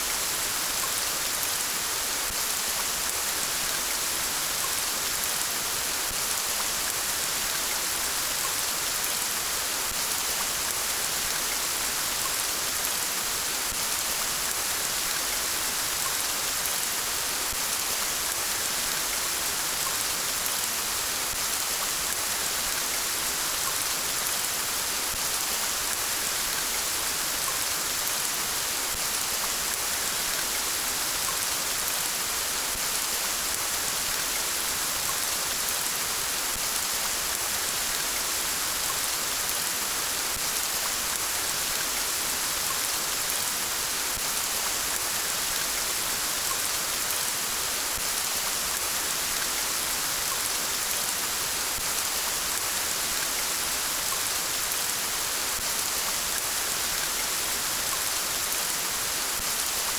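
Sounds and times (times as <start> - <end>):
steady rain: 0.0 - 59.9.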